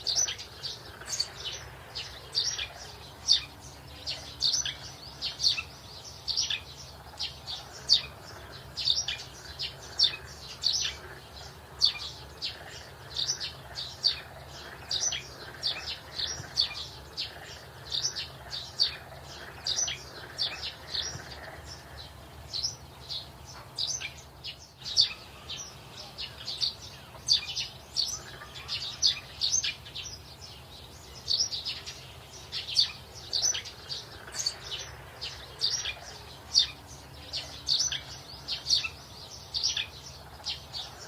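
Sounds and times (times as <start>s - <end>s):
faint steady low hum: 0.0s - 41.0s
small birds chirping: 0.0s - 41.0s.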